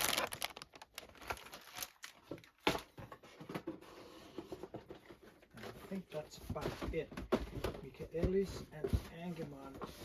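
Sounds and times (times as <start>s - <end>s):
cardboard boxes rustling and tapping: 2.2s - 10.0s.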